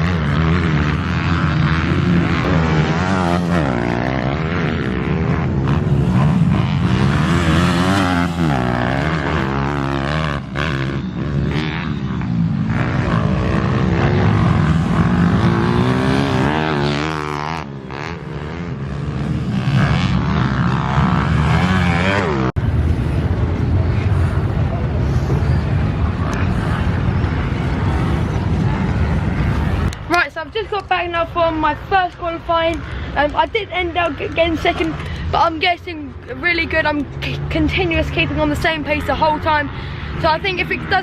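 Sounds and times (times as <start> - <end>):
pit bike engine revving: 0.0 - 41.0.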